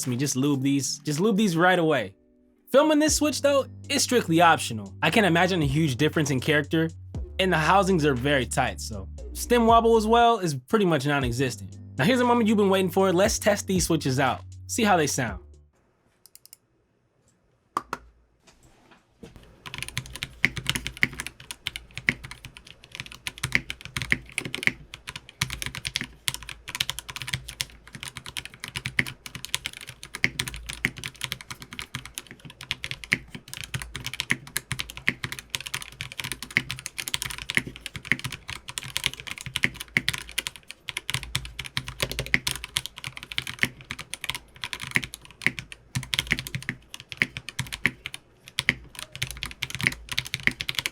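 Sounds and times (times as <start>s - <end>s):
typing on mechanical keyboard: 19.6s - 50.9s.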